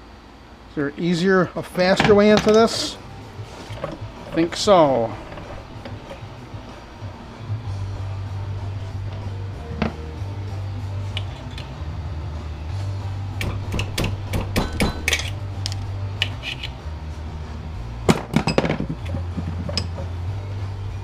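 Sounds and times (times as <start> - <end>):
steady low hum: 0.0 - 21.0
metal strikes: 13.3 - 16.8
metal parts clinking: 14.6 - 16.8.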